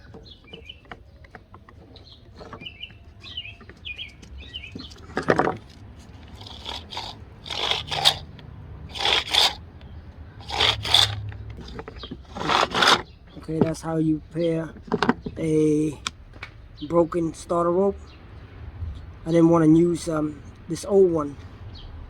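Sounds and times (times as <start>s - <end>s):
short metal scraping: 5.1s - 8.3s, 8.9s - 9.6s, 10.4s - 13.1s.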